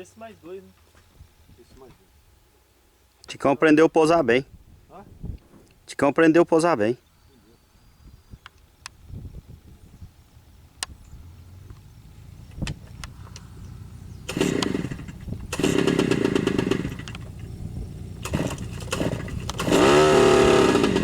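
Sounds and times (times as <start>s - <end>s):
airplane piston engine: 12.3s - 21.0s.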